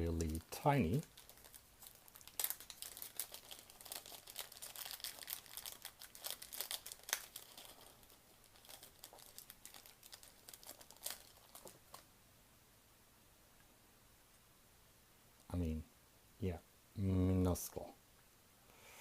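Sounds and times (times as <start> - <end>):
packaging crinkling: 0.0 - 12.1.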